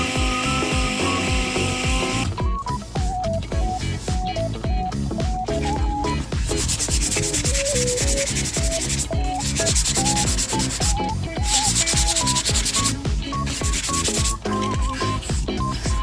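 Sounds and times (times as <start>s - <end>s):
background music with beat: 0.0s - 16.0s
sanding body putty: 6.4s - 16.0s.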